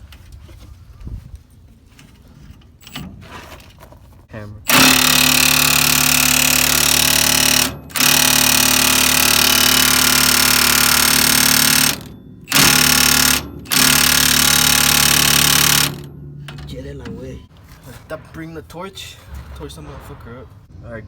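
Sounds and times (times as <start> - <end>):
pneumatic air hammer hammering: 4.7 - 16.8.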